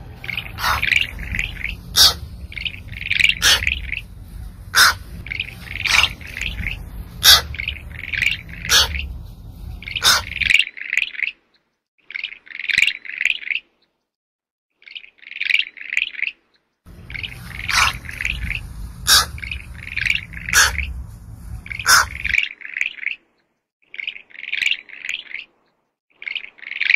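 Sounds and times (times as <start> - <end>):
low wind-like rumble: 0.0 - 10.5, 16.9 - 22.4
high-pitched chirping calls: 0.0 - 10.6, 16.9 - 22.4.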